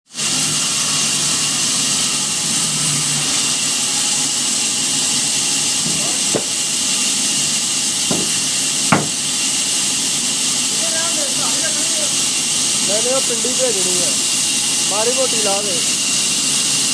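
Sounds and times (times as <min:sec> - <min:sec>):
loud steady machine hiss: 0:00.1 - 0:16.9
sharp knocks: 0:05.8 - 0:06.8, 0:08.1 - 0:09.3.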